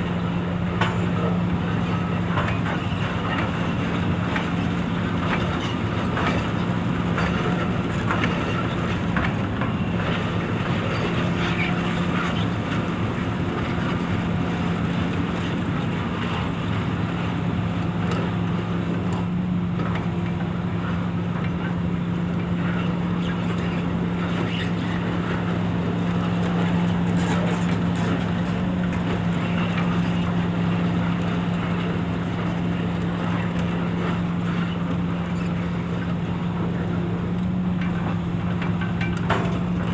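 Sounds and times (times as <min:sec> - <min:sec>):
excavator diesel engine running: 0:00.0 - 0:39.9
metallic clanks from machine: 0:27.1 - 0:28.7.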